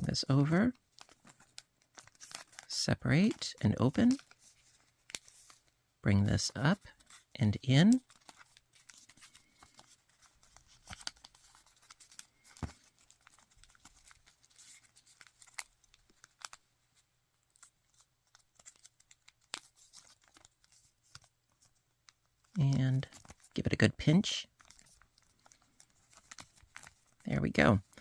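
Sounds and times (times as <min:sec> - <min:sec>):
paper crinkling as folded: 0:00.0 - 0:05.8, 0:06.7 - 0:23.9, 0:24.5 - 0:28.0
soft paper crackles: 0:00.0 - 0:28.0.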